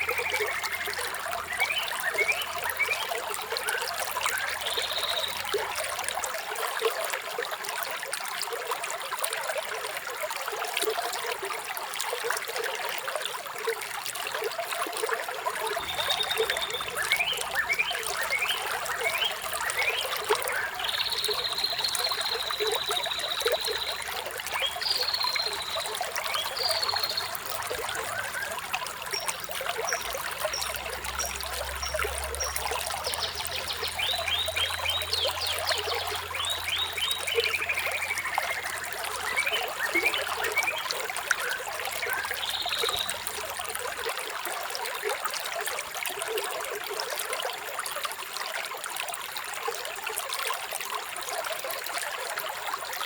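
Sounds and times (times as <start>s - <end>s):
birds singing: 0.0s - 5.6s, 15.7s - 43.4s
water trickling: 0.0s - 53.0s.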